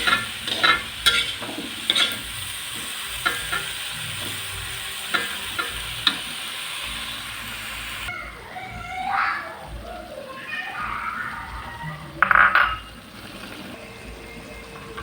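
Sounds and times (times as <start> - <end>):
spatula scraping a pan: 0.0 - 8.1
stir-fry sizzling in a pan: 0.0 - 15.0.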